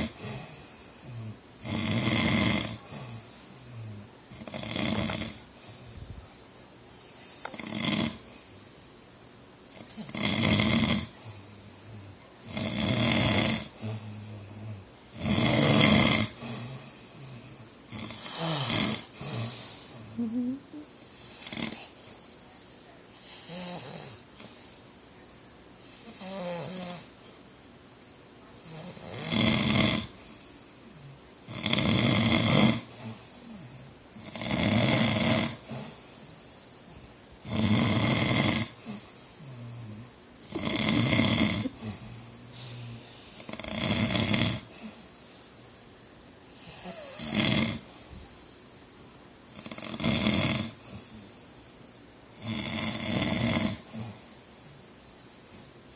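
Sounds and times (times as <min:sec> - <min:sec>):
man snoring loudly: 0:00.0 - 0:05.5, 0:07.4 - 0:08.3, 0:09.7 - 0:11.6, 0:12.4 - 0:17.2, 0:17.9 - 0:20.5, 0:21.2 - 0:21.9, 0:23.2 - 0:24.2, 0:26.0 - 0:27.1, 0:28.6 - 0:30.2, 0:31.4 - 0:36.0, 0:37.4 - 0:45.0, 0:46.5 - 0:48.0, 0:49.5 - 0:51.2, 0:52.4 - 0:54.3.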